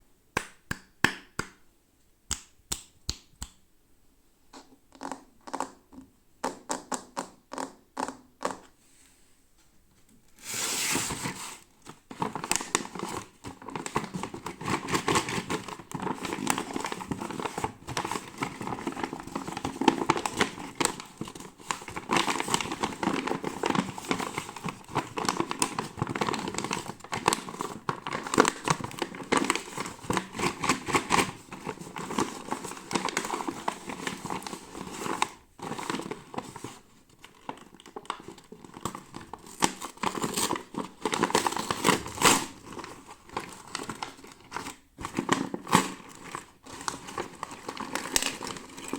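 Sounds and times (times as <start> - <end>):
sharp taps and clicks: 2.3 - 3.6
packaging crinkling and tearing: 10.7 - 48.9.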